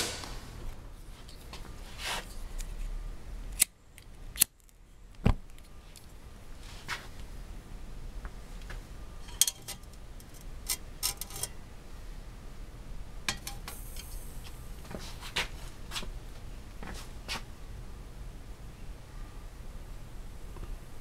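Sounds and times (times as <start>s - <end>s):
low hum: 0.0s - 1.0s
metal pots clinking: 13.3s - 13.6s.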